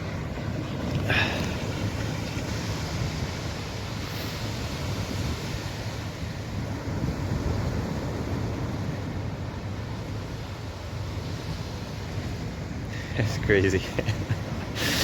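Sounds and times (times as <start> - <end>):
surf washing on beach: 0.0 - 15.0
wind blowing over microphone: 0.0 - 15.0.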